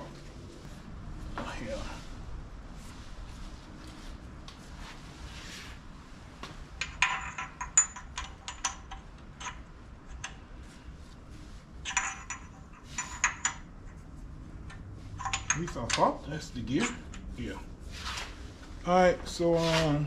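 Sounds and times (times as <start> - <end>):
metal tools clinking: 6.8 - 10.3, 11.8 - 13.7, 14.7 - 17.3.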